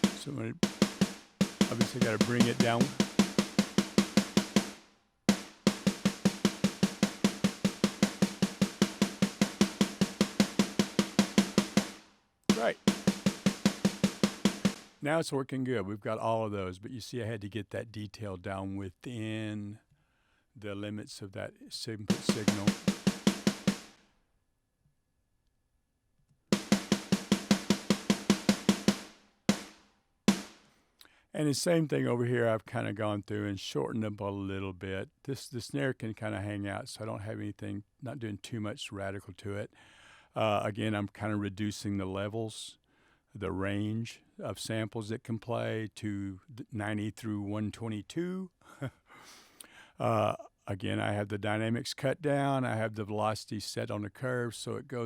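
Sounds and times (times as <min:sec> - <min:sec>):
fast snare drum hits: 0:00.0 - 0:15.1, 0:22.1 - 0:24.0, 0:26.6 - 0:30.6.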